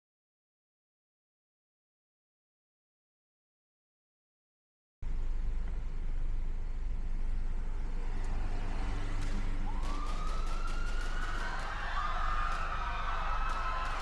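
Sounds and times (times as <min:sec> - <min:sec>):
steady low rumble: 0:05.0 - 0:14.0
police siren wailing: 0:08.4 - 0:14.0.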